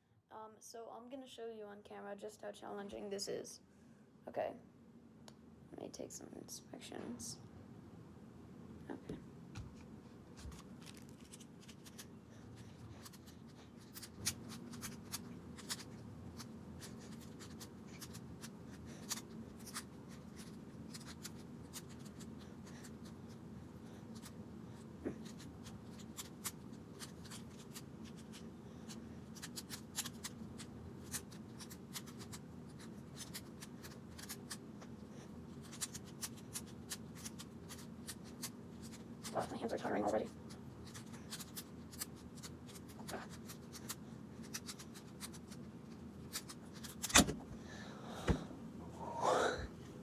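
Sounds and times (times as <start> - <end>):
low steady hum: 0.0 - 50.0
puzzle cube clicking and rattling: 13.0 - 22.3, 25.2 - 28.4, 29.3 - 34.6, 35.6 - 39.3, 40.8 - 45.6.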